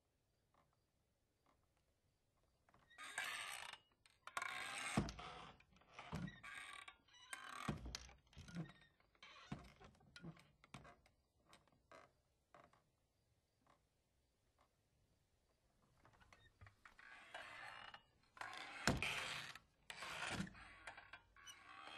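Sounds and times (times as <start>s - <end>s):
door hinges creaking: 4.4s - 10.9s, 16.3s - 21.9s.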